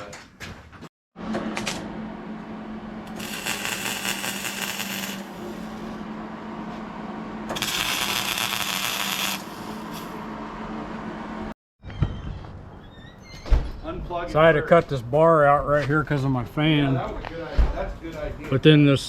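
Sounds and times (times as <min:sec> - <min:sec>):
power tool humming: 0:03.1 - 0:06.0, 0:07.5 - 0:10.2.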